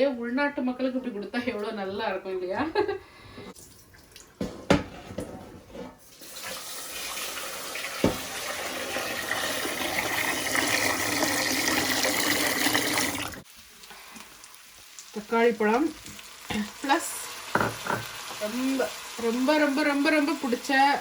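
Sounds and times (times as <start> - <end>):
tap running into a sink: 7.8 - 13.4.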